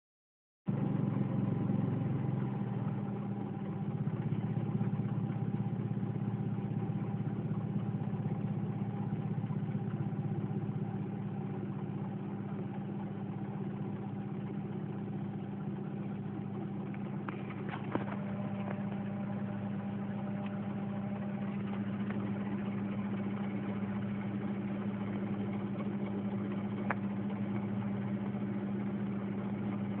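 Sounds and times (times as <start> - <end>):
car engine idling roughly: 0.7 - 30.0.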